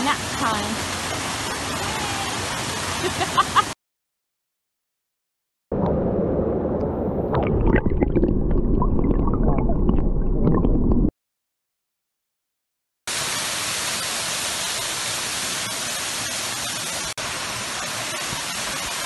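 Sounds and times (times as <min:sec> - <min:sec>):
waterfall rushing: 0:00.0 - 0:03.8, 0:13.1 - 0:19.0.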